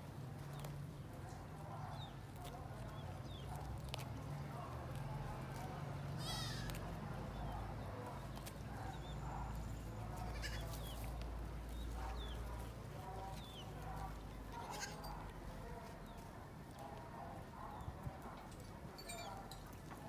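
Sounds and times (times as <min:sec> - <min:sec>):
goats bleating: 0:06.2 - 0:06.8, 0:10.2 - 0:10.8, 0:14.6 - 0:15.1.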